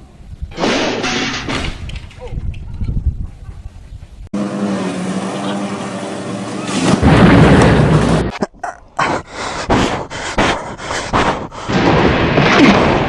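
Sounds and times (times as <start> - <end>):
loud rumbling crash: 6.7 - 8.3, 11.7 - 13.0.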